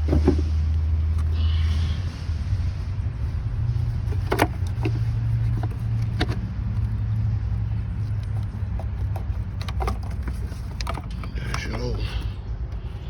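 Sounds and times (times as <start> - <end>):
plastic creaks and clicks: 8.2 - 12.0.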